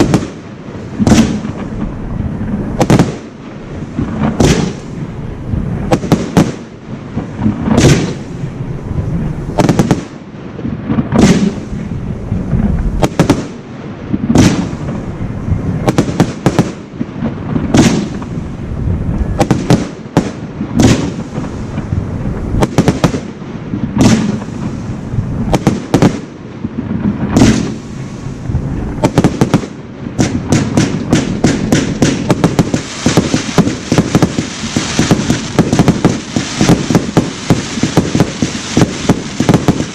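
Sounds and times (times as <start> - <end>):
firework shells booming: 0.0 - 8.4, 9.1 - 39.9
fireworks crackling: 0.0 - 39.9.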